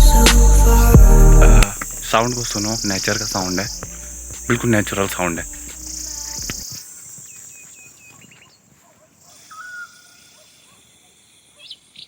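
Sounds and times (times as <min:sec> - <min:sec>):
crickets trilling: 0:00.0 - 0:12.0
bird chirps and whistles: 0:09.5 - 0:10.2.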